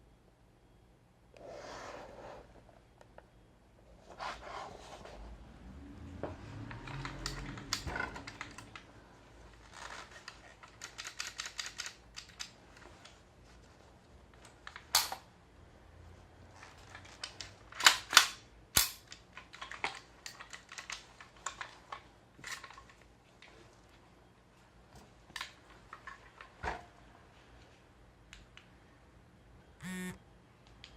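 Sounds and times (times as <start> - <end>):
small mechanical clicks and rattles: 6.7 - 8.9, 9.6 - 13.2, 16.6 - 23.5.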